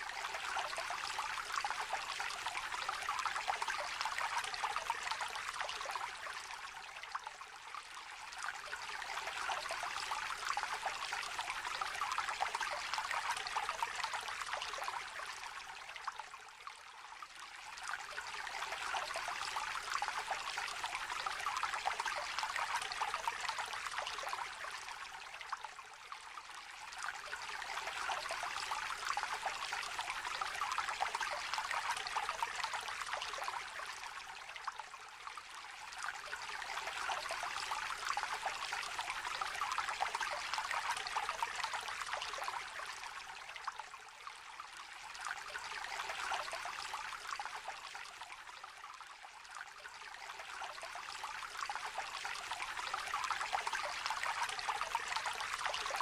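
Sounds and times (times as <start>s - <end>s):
stream trickling and babbling: 0.0s - 56.0s.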